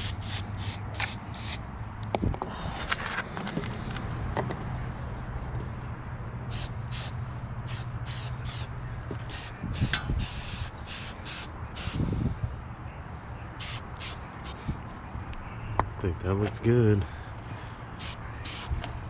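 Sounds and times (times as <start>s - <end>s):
spray paint can hissing: 0.0s - 1.6s, 6.5s - 12.0s, 13.6s - 14.6s, 18.0s - 18.7s.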